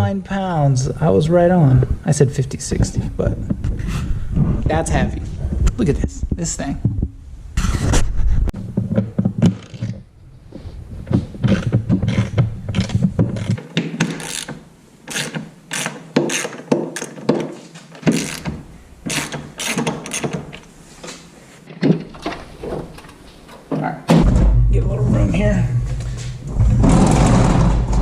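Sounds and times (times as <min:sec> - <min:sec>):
ratchet wrench clicking: 0:14.1 - 0:14.5.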